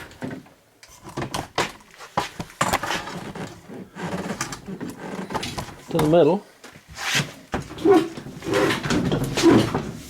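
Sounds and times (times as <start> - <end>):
refrigerator clunking and scraping: 2.6 - 6.2, 7.1 - 10.0.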